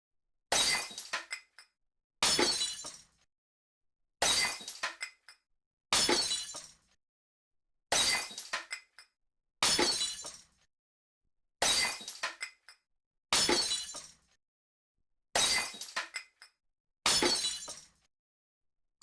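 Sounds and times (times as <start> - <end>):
glass smashing: 0.5 - 1.4, 2.2 - 3.1, 4.2 - 5.0, 6.0 - 6.8, 7.9 - 8.8, 9.6 - 10.5, 11.6 - 12.5, 13.4 - 14.2, 15.4 - 16.3, 17.1 - 18.0.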